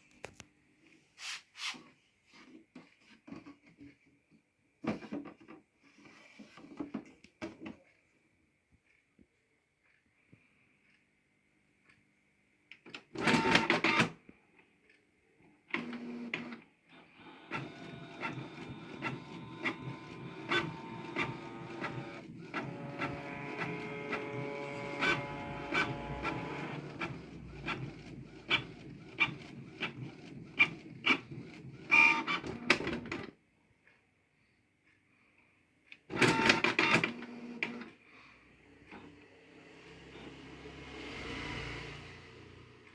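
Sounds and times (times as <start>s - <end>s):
printer mechanical burst: 13.2s - 14.1s, 17.5s - 33.2s, 36.1s - 37.2s
inkjet printer running: 17.4s - 33.2s.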